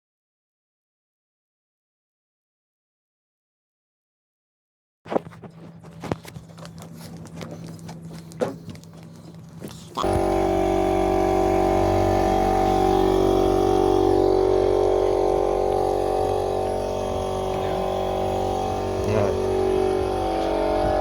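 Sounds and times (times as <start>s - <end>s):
motor running steadily: 5.4s - 21.0s.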